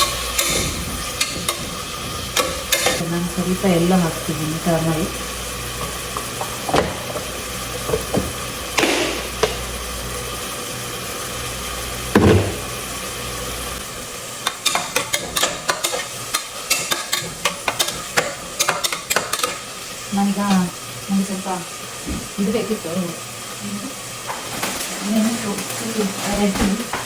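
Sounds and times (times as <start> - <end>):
spoon clinking and scraping pan: 0.0 - 3.0, 14.4 - 20.0
masala sizzling in a pan: 0.0 - 27.0.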